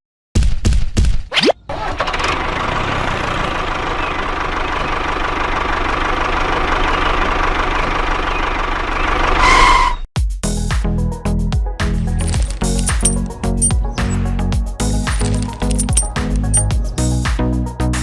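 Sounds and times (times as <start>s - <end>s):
tractor engine running: 1.7s - 9.4s, 12.1s - 16.8s.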